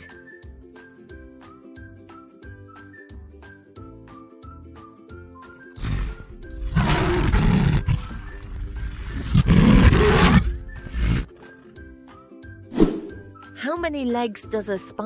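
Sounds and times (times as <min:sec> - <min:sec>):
lion grunt: 0:05.8 - 0:11.3
lion roaring: 0:05.8 - 0:11.3.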